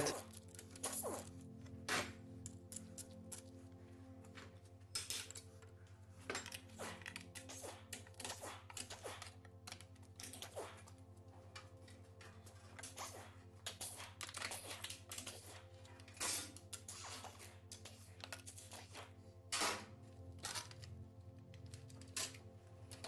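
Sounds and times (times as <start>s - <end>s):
clicks of hand tools and metal parts: 0.0s - 3.5s, 4.2s - 10.9s, 11.5s - 23.0s
faint background music: 0.0s - 23.0s.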